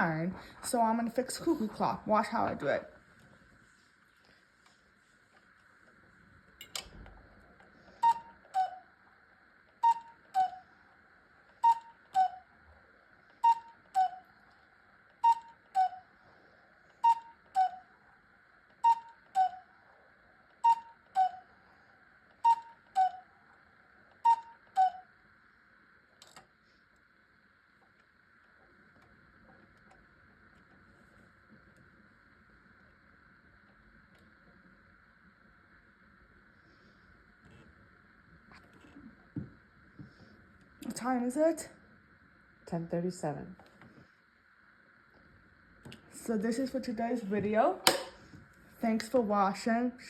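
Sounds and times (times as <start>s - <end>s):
cuckoo clock calling: 7.9s - 9.0s, 9.7s - 10.8s, 11.5s - 12.6s, 13.3s - 16.2s, 16.9s - 18.0s, 18.7s - 21.6s, 22.3s - 23.4s, 24.1s - 25.1s.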